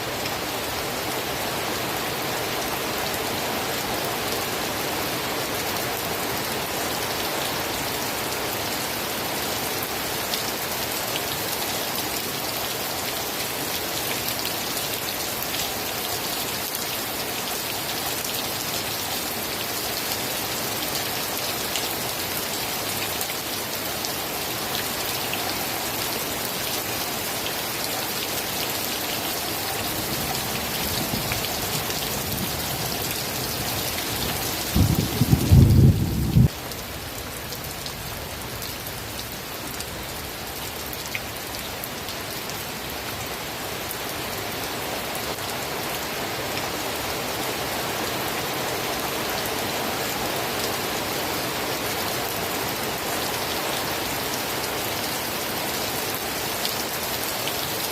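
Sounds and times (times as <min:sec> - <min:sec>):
steady rain falling: 0:00.0 - 0:57.9
low rumble of thunder: 0:34.3 - 0:36.6.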